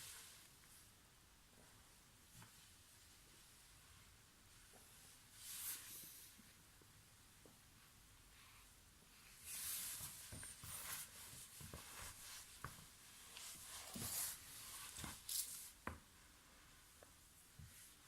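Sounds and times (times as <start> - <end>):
hands and clothing rustling: 9.3 - 18.0.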